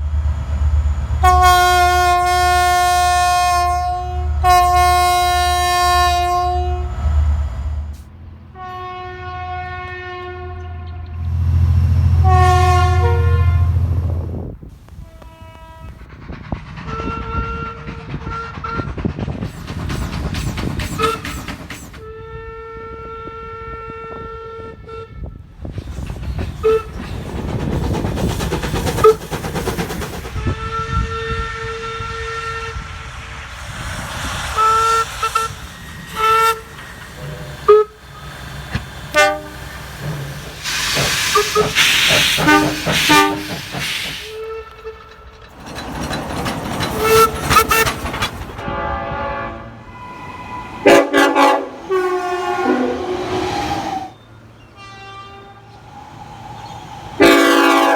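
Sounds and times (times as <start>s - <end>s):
rumble of passing trains: 0.0s - 57.9s
train horn blasts: 1.2s - 7.2s, 8.5s - 14.4s, 15.0s - 16.0s, 16.9s - 18.9s, 22.0s - 25.6s, 30.4s - 33.0s, 34.6s - 43.6s, 44.3s - 45.1s, 48.6s - 55.8s, 57.2s - 57.9s.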